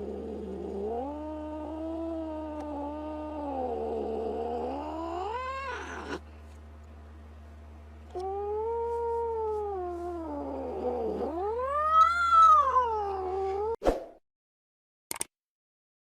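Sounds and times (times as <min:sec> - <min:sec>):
angry cat yowling: 0:00.0 - 0:06.2, 0:08.2 - 0:13.8
brief click: 0:15.1 - 0:15.3.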